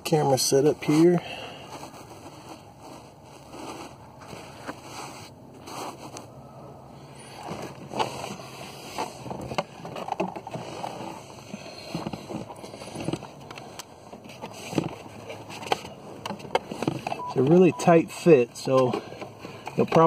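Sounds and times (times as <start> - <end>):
parts clunking and scraping: 0.1 - 6.4, 7.1 - 20.0
rustling: 1.6 - 6.3.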